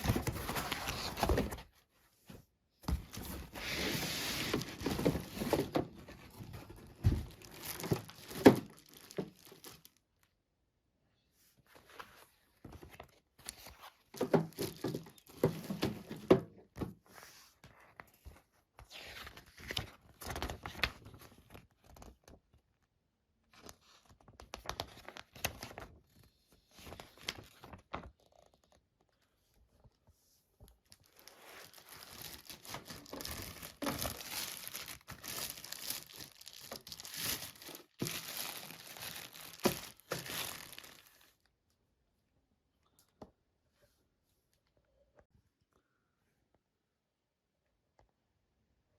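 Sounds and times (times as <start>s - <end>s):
plastic packaging crinkling: 3.4s - 10.0s, 14.2s - 16.0s, 30.9s - 41.4s.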